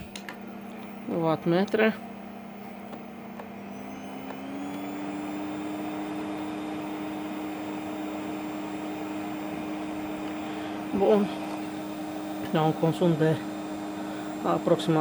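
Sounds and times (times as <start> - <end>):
vacuum cleaner motor running: 0.0 - 15.0.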